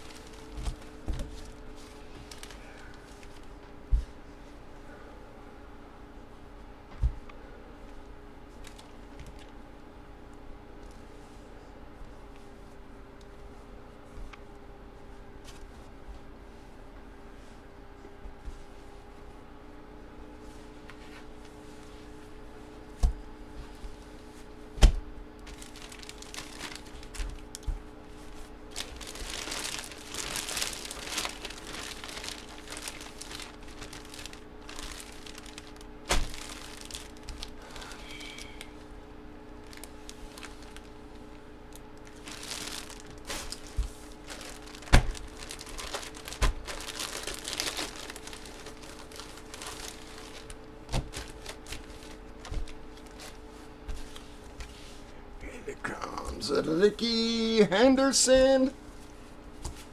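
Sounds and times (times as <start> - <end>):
plastic packaging crinkling: 0.0 - 3.5, 8.6 - 9.6, 25.4 - 38.7, 39.5 - 54.5.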